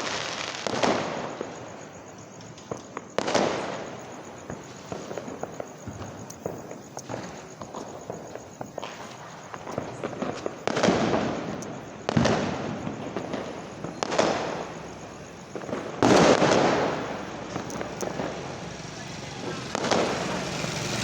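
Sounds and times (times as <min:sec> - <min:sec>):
loud firecracker bangs: 0:00.0 - 0:01.9, 0:02.7 - 0:21.0
small crackles and pops: 0:02.4 - 0:16.6, 0:17.2 - 0:18.4.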